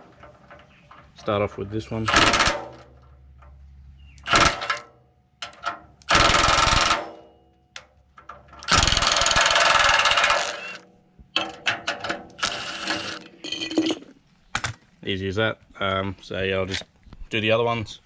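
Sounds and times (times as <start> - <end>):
handheld power tool whirring: 8.7 - 10.8, 12.4 - 13.2.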